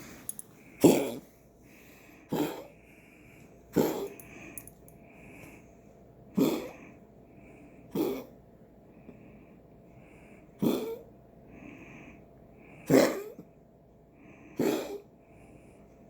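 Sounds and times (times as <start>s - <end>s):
pet coughing: 0.8s - 1.3s, 2.3s - 2.8s, 3.7s - 4.2s, 6.3s - 6.8s, 7.9s - 8.4s, 10.6s - 11.0s, 12.8s - 13.4s, 14.6s - 15.1s.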